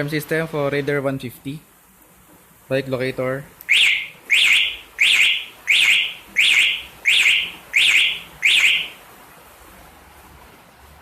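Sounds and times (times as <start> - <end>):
motorcycle alarm chirps: 3.7 - 9.0.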